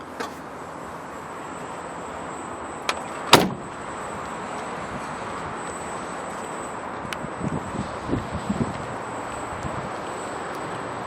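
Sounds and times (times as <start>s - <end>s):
door latch click: 3.3s - 3.6s
van door shutting thud: 3.3s - 3.8s.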